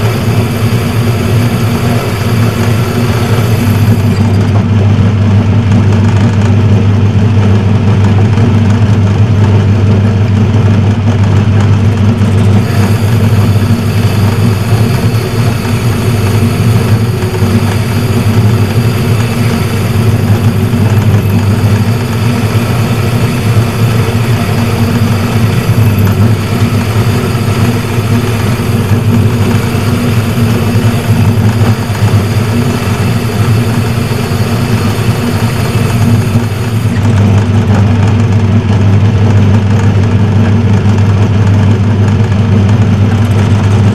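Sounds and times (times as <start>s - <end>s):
metal lathe motor humming: 0.0s - 43.9s.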